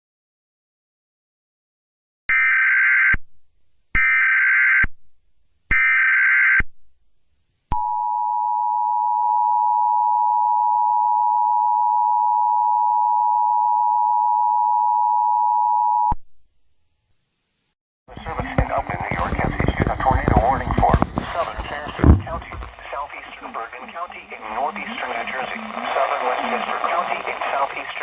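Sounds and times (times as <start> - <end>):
digital data bursts: 18.2 - 28.0.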